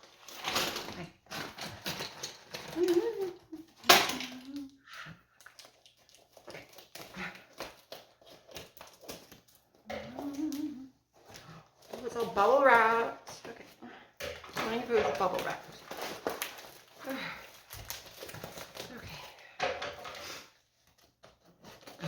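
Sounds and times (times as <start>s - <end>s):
packaging rustling and crinkling: 0.0s - 13.8s, 14.4s - 22.0s
voice murmuring: 10.0s - 11.0s.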